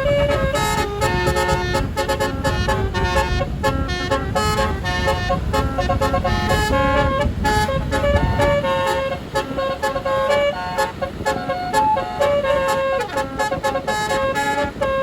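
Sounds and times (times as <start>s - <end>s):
low rumble: 0.0s - 9.1s
bus melody horn: 0.0s - 15.0s.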